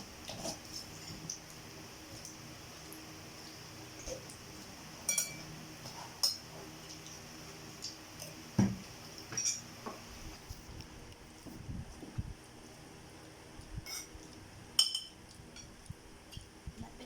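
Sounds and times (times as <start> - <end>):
utensils clinking on a plate: 5.0 - 6.5, 9.3 - 9.7, 13.8 - 14.2, 14.8 - 16.5.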